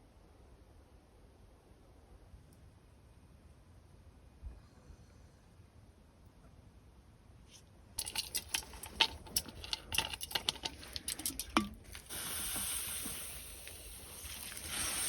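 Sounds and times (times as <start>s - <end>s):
cookware and utensils clinking: 8.0s - 12.1s
high hiss: 12.0s - 15.0s.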